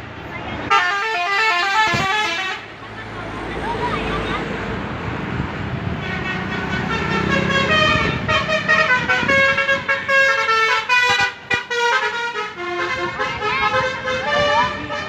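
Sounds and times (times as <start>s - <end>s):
engine rumble: 0.0s - 15.0s
bus horn melody: 0.7s - 2.8s, 5.9s - 15.0s.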